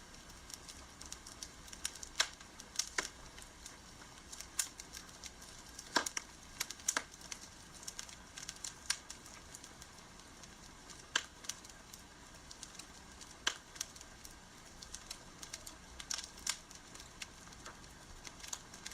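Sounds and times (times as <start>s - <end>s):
campfire crackling and popping: 0.0s - 18.9s.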